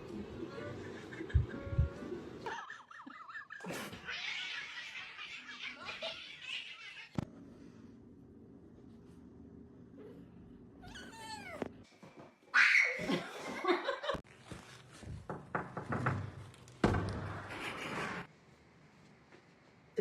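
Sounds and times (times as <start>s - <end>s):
cat meowing: 10.8s - 11.7s.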